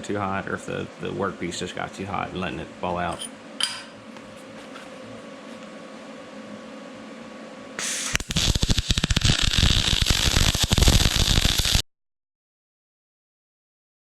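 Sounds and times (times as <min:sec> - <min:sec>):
welding arc crackling: 0:07.8 - 0:11.8
welding gas hiss: 0:07.8 - 0:11.8.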